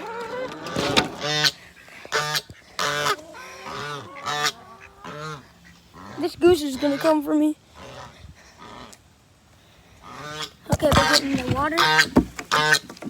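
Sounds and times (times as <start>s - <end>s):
goose honking: 0.0s - 9.0s, 10.0s - 13.0s.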